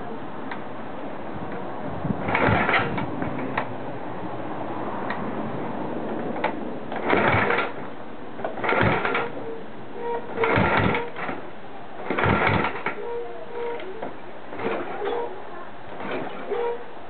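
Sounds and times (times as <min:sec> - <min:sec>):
motorcycle engine turning over: 0:02.2 - 0:03.7, 0:06.2 - 0:09.4, 0:10.0 - 0:11.4, 0:12.0 - 0:15.3, 0:15.9 - 0:16.8.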